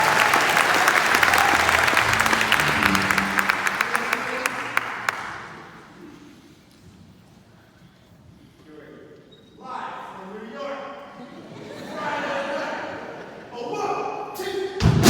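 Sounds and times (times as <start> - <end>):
audience applause: 0.0 - 5.9.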